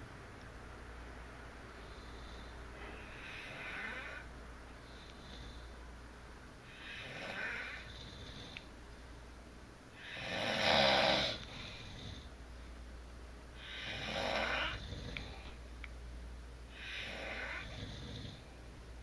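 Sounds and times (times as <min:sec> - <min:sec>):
adult snoring: 0:01.8 - 0:04.3, 0:06.7 - 0:08.6, 0:10.0 - 0:12.3, 0:13.6 - 0:15.6, 0:16.7 - 0:18.6.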